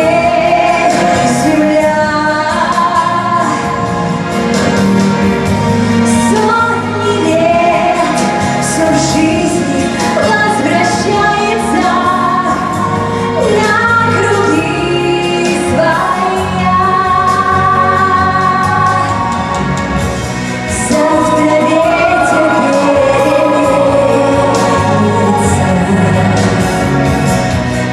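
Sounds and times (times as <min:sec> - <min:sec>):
instrumental backing music: 0:00.0 - 0:27.9
choir singing: 0:20.7 - 0:27.5.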